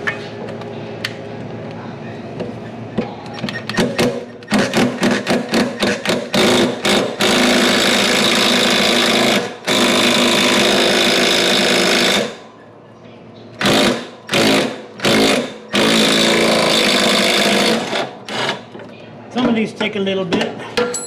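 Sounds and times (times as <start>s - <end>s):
impact wrench hammering: 3.7s - 12.5s, 13.6s - 18.7s.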